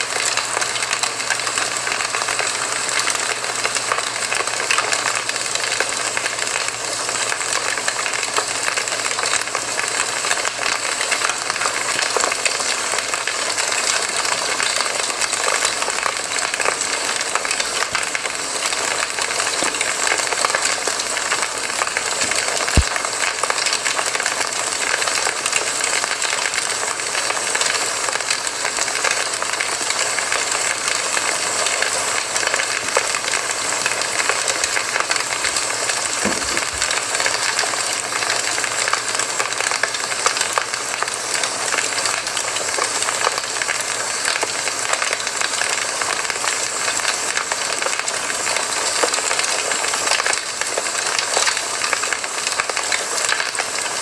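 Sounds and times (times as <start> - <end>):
campfire crackling: 16.2 - 24.1.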